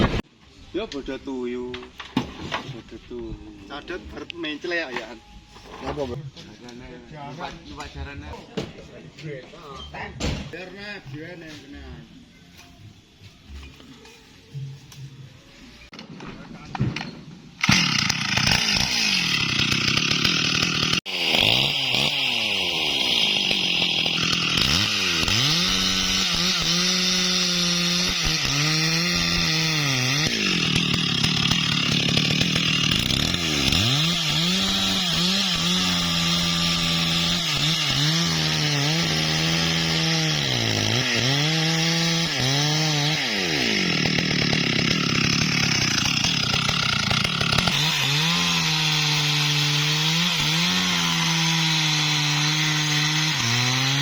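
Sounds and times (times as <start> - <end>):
chainsaw cutting wood: 17.6 - 54.0.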